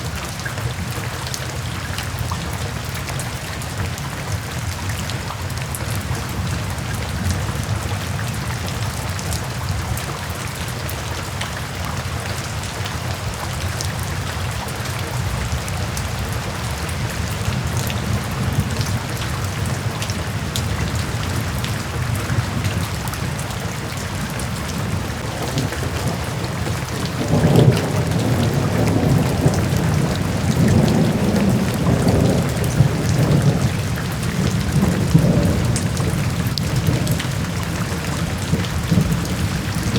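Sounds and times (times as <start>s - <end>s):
rain drops ticking: 0.0s - 39.9s
low rumble of thunder: 12.9s - 39.9s.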